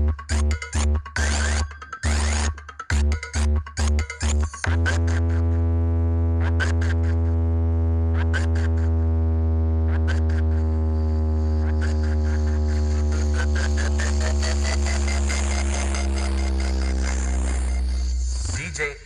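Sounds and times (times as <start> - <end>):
deep bass tone: 0.0 - 19.0
electronic dance music: 0.0 - 19.0
synth sweeps: 9.9 - 18.7.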